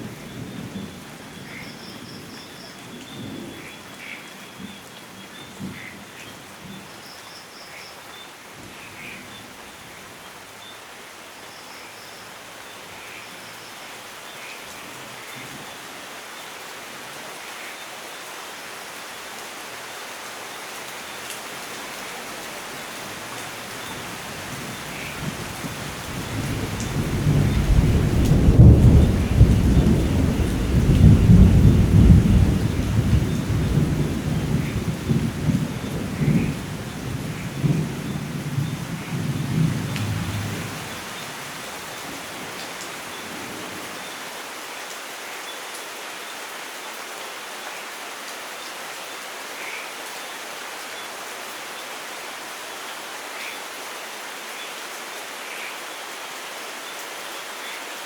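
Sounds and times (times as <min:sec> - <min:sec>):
steady rain falling: 0:00.0 - 0:58.0
thunder rumbling: 0:24.0 - 0:41.5.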